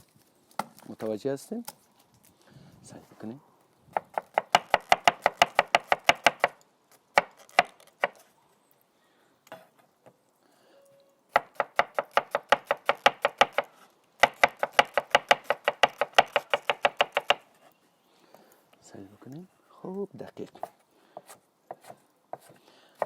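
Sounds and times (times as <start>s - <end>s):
knife chopping on cutting board: 21.2s - 23.0s.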